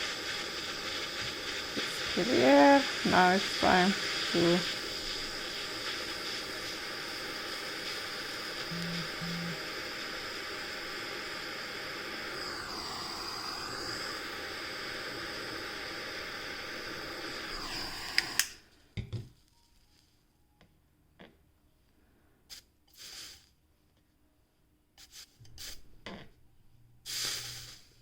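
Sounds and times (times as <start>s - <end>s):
gas torch flame hissing: 0.0s - 18.7s, 22.5s - 23.6s, 25.0s - 25.9s, 27.0s - 28.0s
torch shutoff click: 0.1s - 18.6s.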